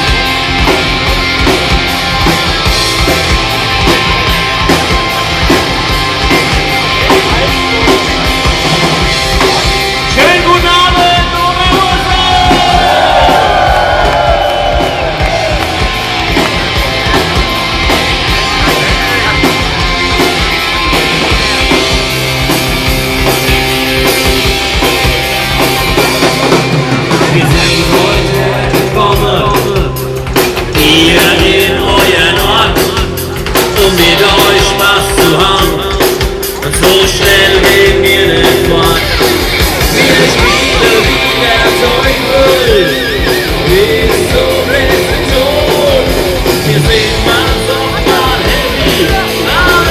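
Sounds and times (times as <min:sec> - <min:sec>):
crowd: 0:00.0 - 0:49.9
drums: 0:00.0 - 0:49.9
electric guitar: 0:00.0 - 0:49.9
person singing: 0:27.1 - 0:39.3, 0:39.9 - 0:49.9.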